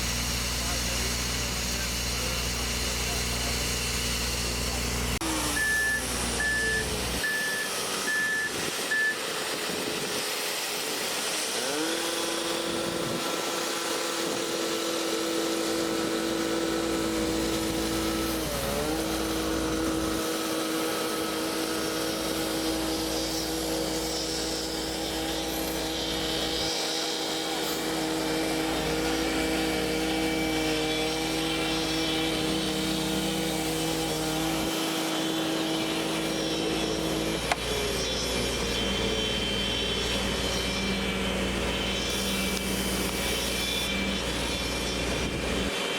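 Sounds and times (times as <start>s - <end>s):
reversing beeper: 5.2s - 9.4s.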